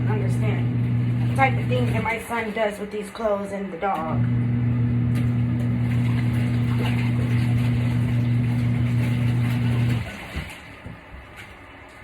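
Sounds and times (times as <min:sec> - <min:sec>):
washing machine motor humming: 0:00.0 - 0:12.0.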